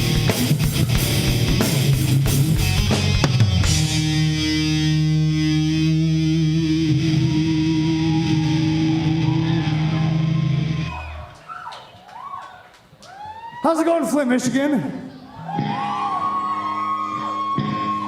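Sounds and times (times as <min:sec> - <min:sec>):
heavy rock band playing: 0:00.0 - 0:11.2.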